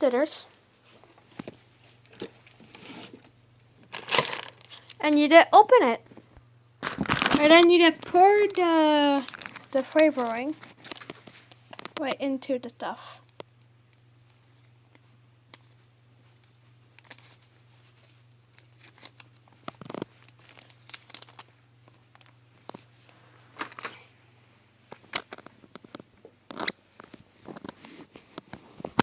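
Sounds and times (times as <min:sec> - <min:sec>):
faint low hum: 0:00.0 - 0:29.0
plastic packet crinkling: 0:03.8 - 0:05.2, 0:06.8 - 0:12.1, 0:15.7 - 0:24.1, 0:24.9 - 0:27.8.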